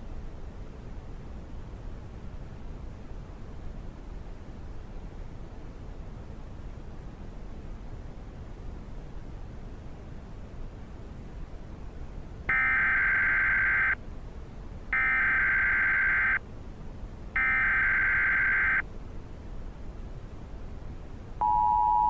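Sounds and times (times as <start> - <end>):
buzzy digital data tones: 12.5 - 14.0, 15.0 - 16.4, 17.4 - 18.8.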